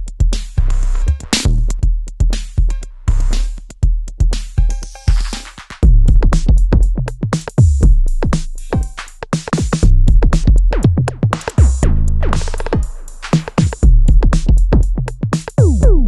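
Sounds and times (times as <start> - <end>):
fast hi-hat ticks: 0.0 - 11.8, 12.4 - 15.9
deep kick drums falling in pitch: 5.8 - 9.0, 9.6 - 12.9, 13.6 - 16.0.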